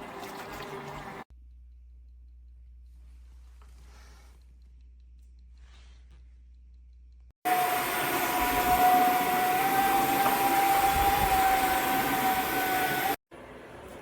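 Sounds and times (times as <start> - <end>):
vacuum mop motor whine: 7.5 - 13.2.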